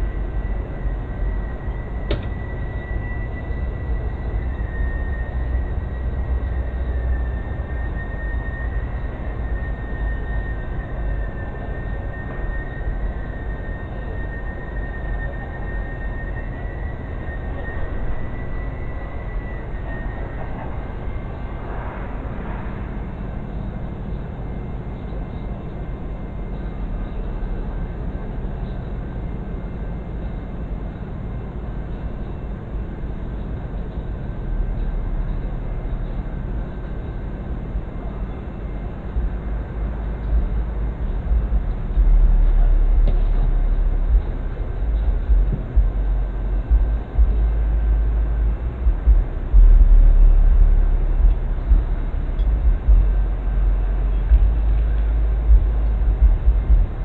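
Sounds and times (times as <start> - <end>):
vehicle engine idling: 22.8 - 57.0.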